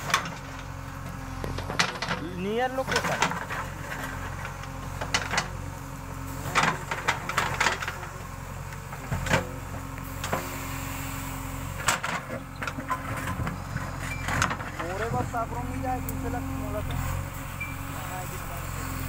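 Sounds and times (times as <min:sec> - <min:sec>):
diesel engine running: 0:00.0 - 0:19.0
sharp knocks and clatters: 0:11.8 - 0:15.3.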